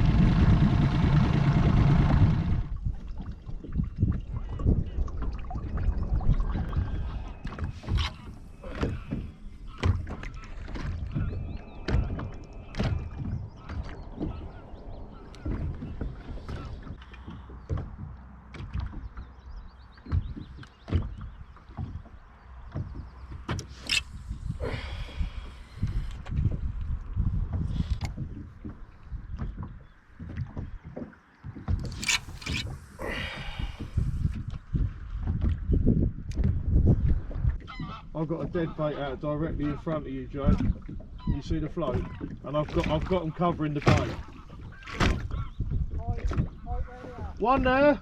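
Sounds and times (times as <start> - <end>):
boat motor running: 0.0 - 3.3, 7.1 - 26.8, 31.7 - 34.5
water sounds: 0.0 - 48.0.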